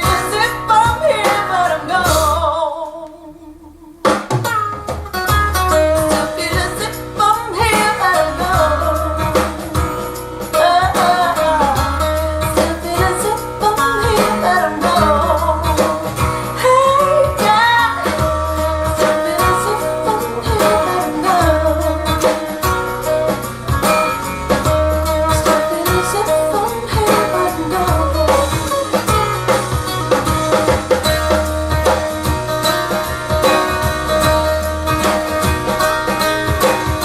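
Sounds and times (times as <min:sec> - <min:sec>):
person singing: 0:00.0 - 0:04.3, 0:05.8 - 0:23.3, 0:24.1 - 0:29.6
guitar: 0:00.0 - 0:37.0
held bass notes: 0:00.0 - 0:37.0
song over loudspeaker: 0:10.6 - 0:37.0.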